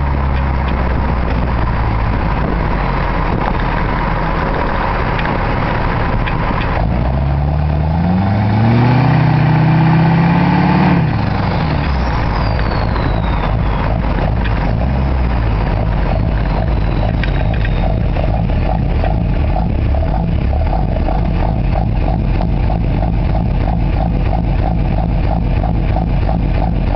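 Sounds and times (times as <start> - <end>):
diesel engine accelerating: 0.0 - 26.9
turbo whistle: 11.4 - 14.3, 15.8 - 18.2.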